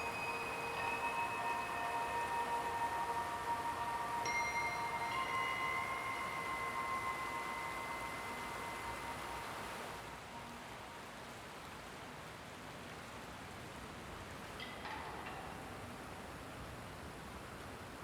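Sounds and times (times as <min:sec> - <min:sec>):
chime-like ringing tones: 0:00.0 - 0:10.0
steady hiss: 0:00.0 - 0:11.9.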